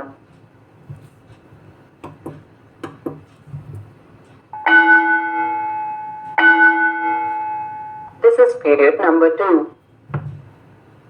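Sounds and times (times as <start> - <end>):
school bell ringing: 4.6 - 8.2.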